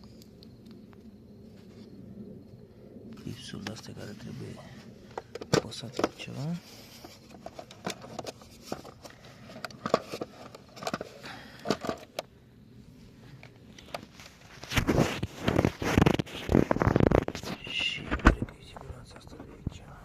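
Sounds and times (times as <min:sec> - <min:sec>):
plastic rustling and knocking: 0:05.1 - 0:12.2, 0:13.8 - 0:19.5
plastic clips clicking and scraping: 0:07.3 - 0:12.3.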